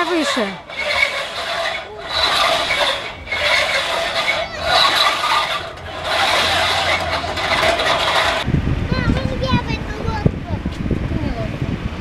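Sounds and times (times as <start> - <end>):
oars rubbing in oarlocks: 0.0 - 8.5.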